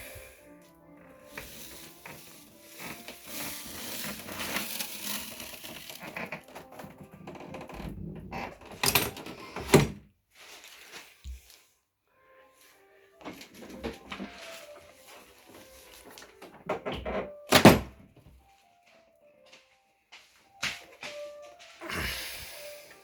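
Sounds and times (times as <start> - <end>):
treadmill rattling and scraping: 1.0 - 10.0, 13.2 - 18.0.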